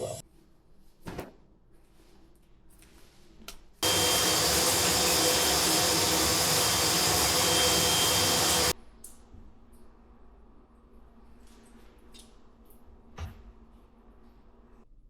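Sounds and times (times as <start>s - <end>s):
loud rushing noise: 3.8s - 8.7s.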